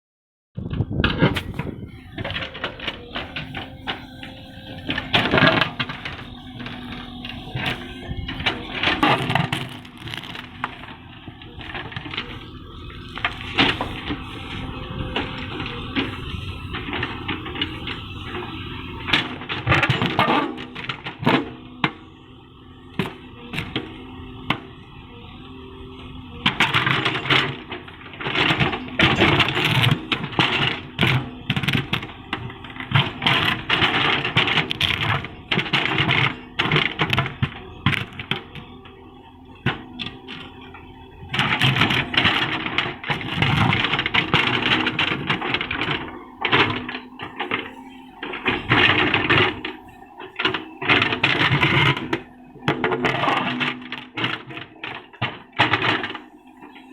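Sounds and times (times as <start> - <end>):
diesel engine working: 0.6 - 56.9
digging knocks and scrapes: 1.0 - 22.0, 26.4 - 56.9.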